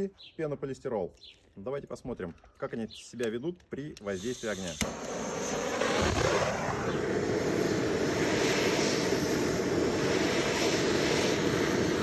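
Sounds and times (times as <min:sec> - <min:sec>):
gas torch flame rushing: 0:04.1 - 0:12.0.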